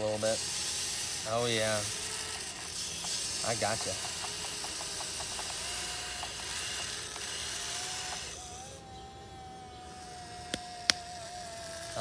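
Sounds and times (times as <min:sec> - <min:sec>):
electric motors whining: 0:00.0 - 0:12.0
sharp clicks: 0:10.5 - 0:11.1.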